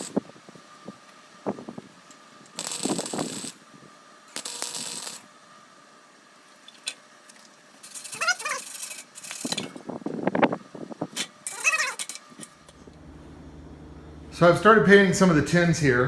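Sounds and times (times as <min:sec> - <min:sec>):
short wavering squeak: 0:11.5 - 0:12.1.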